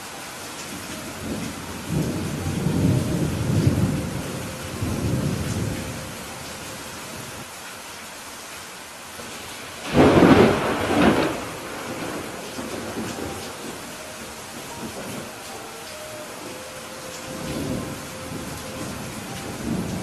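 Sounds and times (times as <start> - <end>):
steady rain: 0.0 - 20.0
rolling thunder rumble: 1.0 - 6.5, 9.8 - 15.5, 17.2 - 20.0
sharp thunderclap: 9.8 - 13.3.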